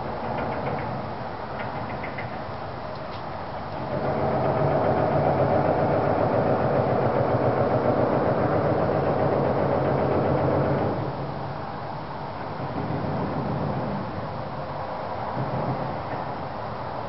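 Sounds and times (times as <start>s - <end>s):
fluttering mechanical drone: 3.8s - 11.4s.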